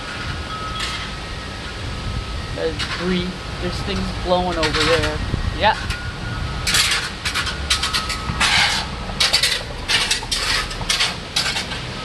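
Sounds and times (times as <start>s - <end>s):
strong wind rumbling: 0.0s - 12.0s
leaves and debris rattling: 2.5s - 12.0s.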